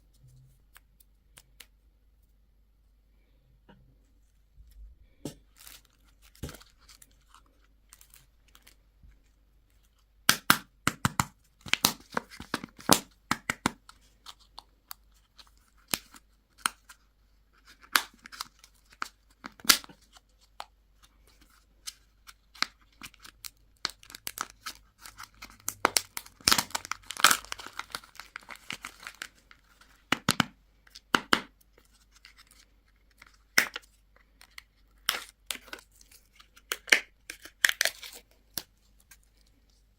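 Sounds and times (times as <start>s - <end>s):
candy wrappers crinkling: 4.7s - 10.0s, 17.6s - 39.8s.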